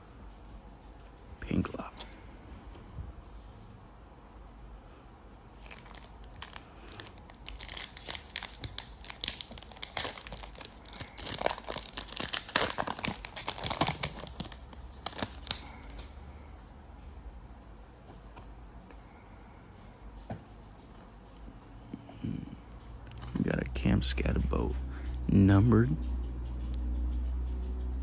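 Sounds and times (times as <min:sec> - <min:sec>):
foil wrapper crinkling and tearing: 0:05.6 - 0:16.2.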